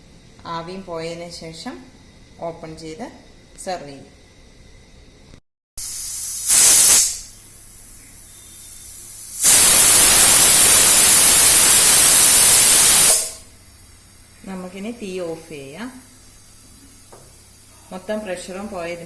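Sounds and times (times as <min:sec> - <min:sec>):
pressure cooker whistle: 0:05.8 - 0:07.3, 0:08.0 - 0:13.4.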